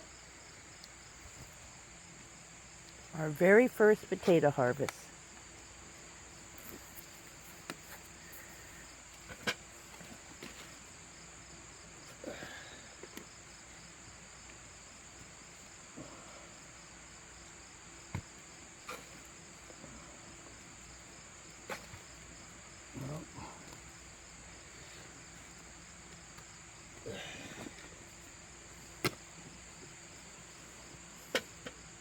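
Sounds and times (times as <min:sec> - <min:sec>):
crickets trilling: 0:00.0 - 0:32.0.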